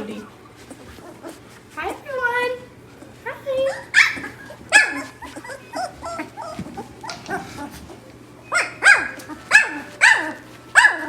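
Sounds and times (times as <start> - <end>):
high yelping barks: 3.7 - 7.4, 8.5 - 11.0
dog barking: 3.7 - 7.5, 8.5 - 11.0.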